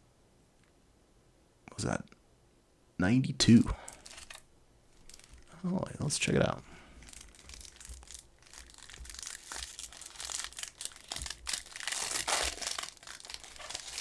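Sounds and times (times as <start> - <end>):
wrapper tearing and crinkling: 3.9 - 4.4, 5.0 - 5.6, 7.0 - 14.0.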